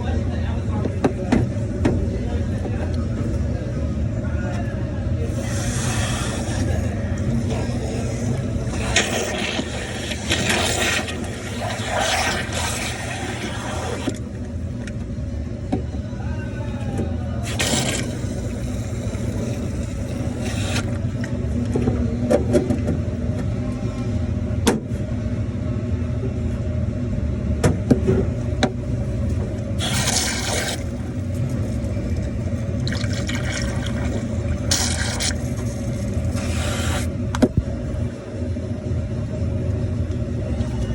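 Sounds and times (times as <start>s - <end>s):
refrigeration unit humming: 0.0s - 40.9s
short hissing gushes: 5.3s - 6.9s, 8.8s - 14.2s, 20.3s - 20.9s, 29.8s - 30.9s, 34.7s - 37.1s.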